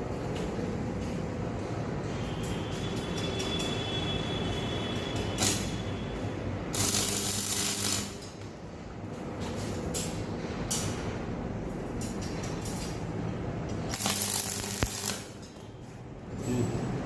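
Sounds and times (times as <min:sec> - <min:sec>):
welding hum with crackling: 0:04.8 - 0:11.0, 0:13.6 - 0:15.7.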